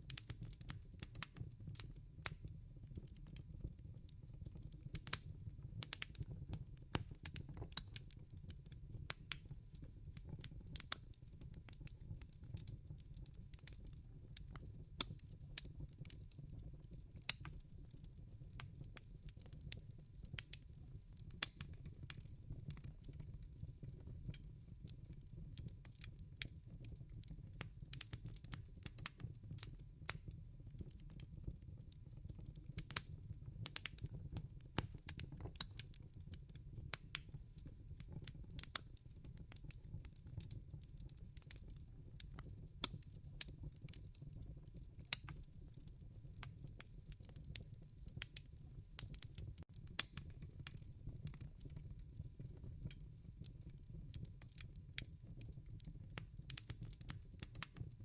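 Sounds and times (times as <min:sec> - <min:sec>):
wood fire popping and snapping: 0:00.0 - 0:58.0
low rumble of flames: 0:29.6 - 0:39.0, 0:40.4 - 0:55.5.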